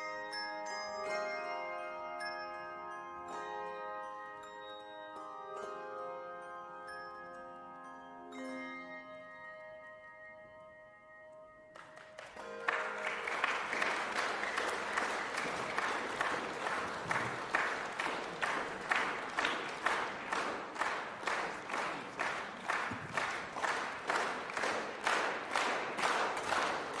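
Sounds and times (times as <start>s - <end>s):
audience applauding in rhythm: 11.7s - 27.0s.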